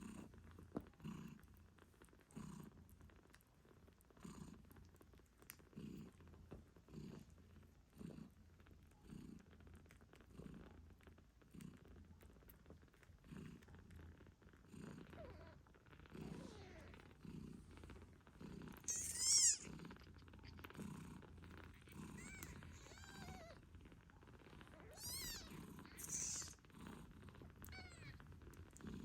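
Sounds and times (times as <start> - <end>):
cat purring: 0.0 - 29.0
kittens mewing: 15.0 - 15.6, 16.2 - 17.0, 18.8 - 20.8, 21.6 - 23.6, 24.6 - 26.6, 27.5 - 28.2.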